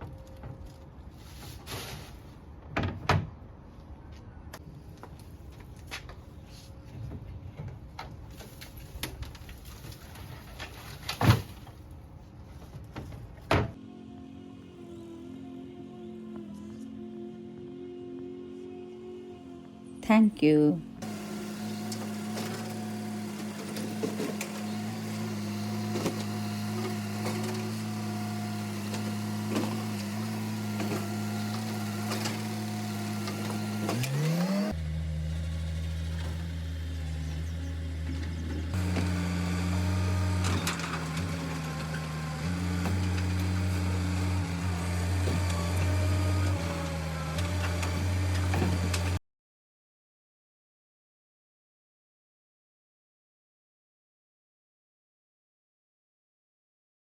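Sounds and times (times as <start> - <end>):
garbage truck engine running: 21.0 - 49.2.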